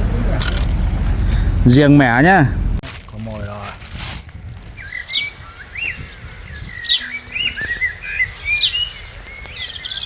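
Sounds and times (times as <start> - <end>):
bird whistling: 4.8 - 10.0
sharp falling bird chirp: 4.8 - 10.0.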